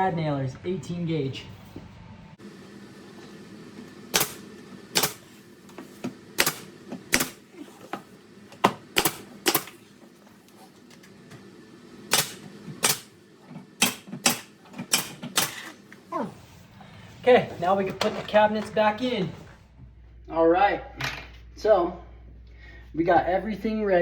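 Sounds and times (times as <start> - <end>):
brad nailer firing: 3.9 - 7.6, 8.6 - 10.0, 12.1 - 13.2, 13.8 - 15.8.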